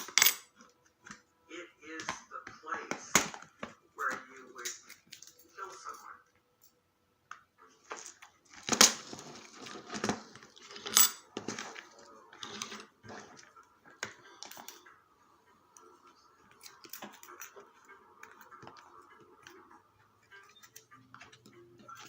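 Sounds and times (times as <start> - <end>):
small metal clicks and clinks: 4.6 - 6.8.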